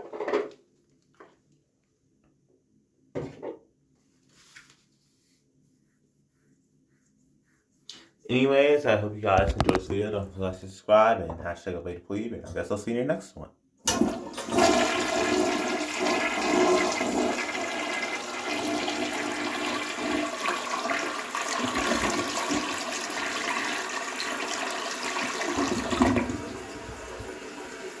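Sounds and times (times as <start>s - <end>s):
toilet flushing: 13.8s - 28.0s
toilet tank refilling: 13.9s - 28.0s.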